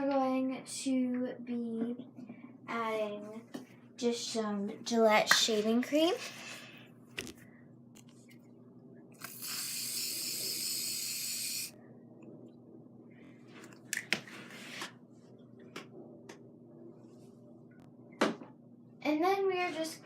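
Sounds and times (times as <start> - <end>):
aerosol can spraying foam: 9.2 - 11.7.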